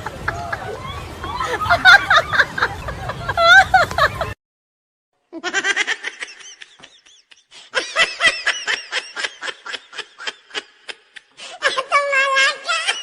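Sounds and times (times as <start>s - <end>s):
person laughing hard: 0.0s - 4.4s, 5.4s - 11.9s.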